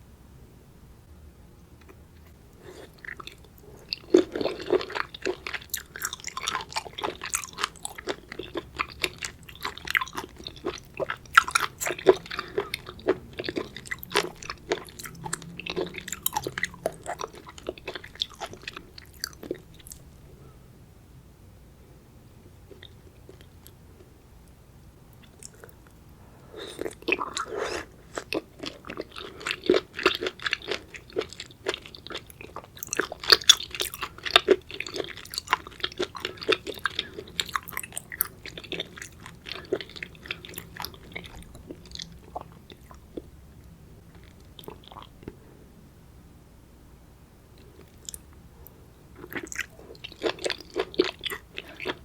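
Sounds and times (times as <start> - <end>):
wet crunching chewing: 2.6 - 20.0, 26.6 - 43.3, 49.2 - 52.0.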